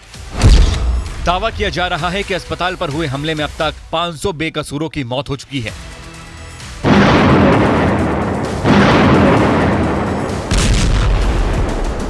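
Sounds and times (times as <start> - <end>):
heavy explosion booms: 0.3 - 1.8, 6.8 - 12.0.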